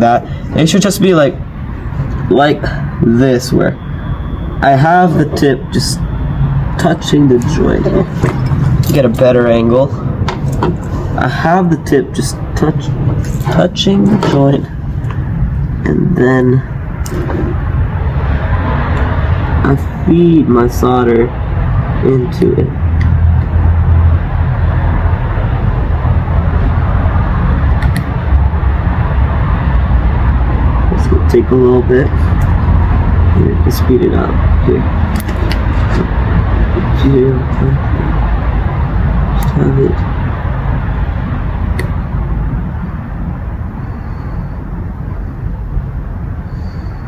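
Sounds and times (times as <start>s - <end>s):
loud rushing noise with rumble: 0.0s - 47.0s
sharp click: 27.8s - 28.1s.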